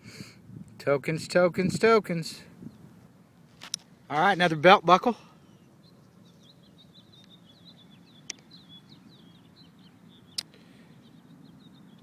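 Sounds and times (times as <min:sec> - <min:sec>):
small bird chirping: 0:05.4 - 0:12.0.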